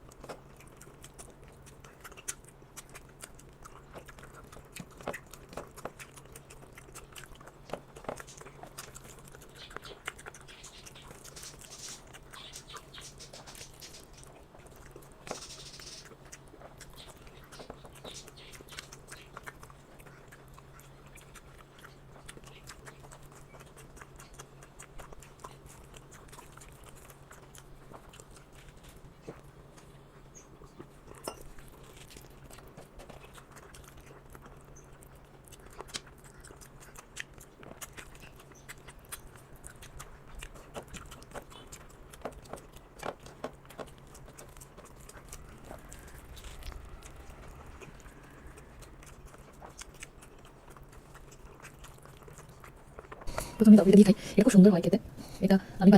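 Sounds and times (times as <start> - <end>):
person chewing: 0.0 - 54.4
steady low hum: 0.0 - 55.9.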